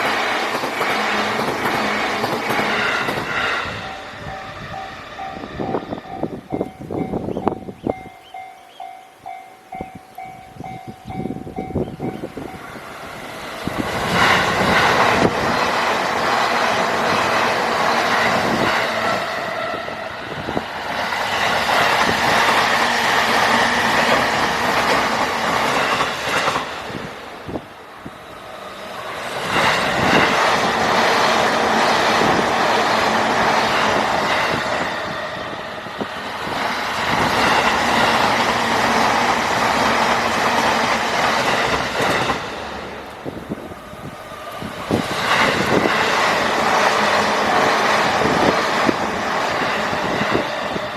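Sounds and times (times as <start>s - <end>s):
train wheels clattering over rail joints: 0.0s - 4.0s, 20.5s - 27.8s, 28.8s - 50.9s.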